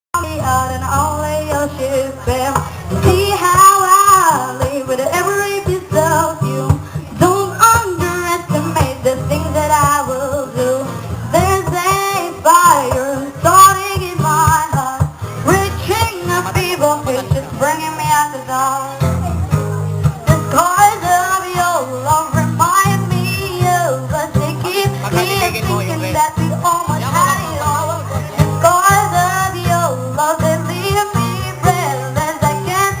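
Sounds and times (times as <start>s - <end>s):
song over sound system: 20.3s - 33.0s.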